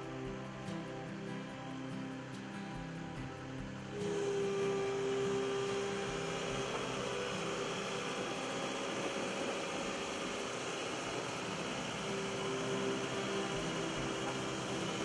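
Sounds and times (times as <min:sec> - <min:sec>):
diesel engine running: 0:03.9 - 0:15.0.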